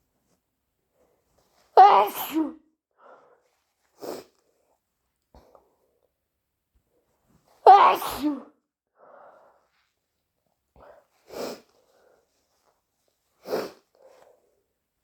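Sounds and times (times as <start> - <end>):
person sneezing: 1.8 - 2.6, 7.7 - 8.5
soft breaths: 2.9 - 6.1, 9.0 - 10.1, 10.7 - 14.8
person sniffing: 4.0 - 4.4, 11.2 - 12.0, 13.4 - 14.2.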